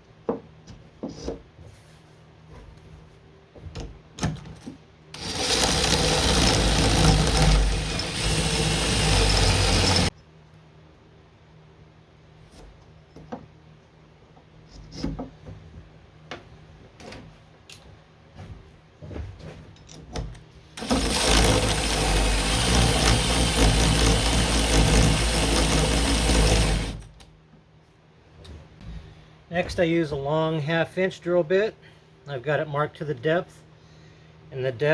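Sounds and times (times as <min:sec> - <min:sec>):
electric drill boring into wood: 0:05.2 - 0:10.1, 0:20.8 - 0:27.1.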